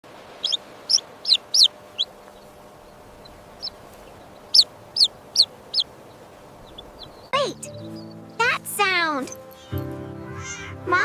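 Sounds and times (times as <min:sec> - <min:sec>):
chick peeping: 0:00.4 - 0:08.6.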